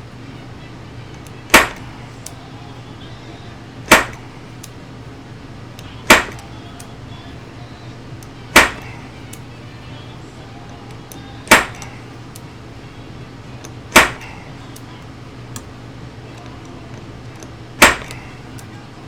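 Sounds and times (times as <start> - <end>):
hammer striking metal rivet: 1.5 - 2.0, 3.9 - 4.3, 6.0 - 6.5, 8.5 - 9.1, 11.4 - 12.0, 13.9 - 14.5, 17.8 - 18.4.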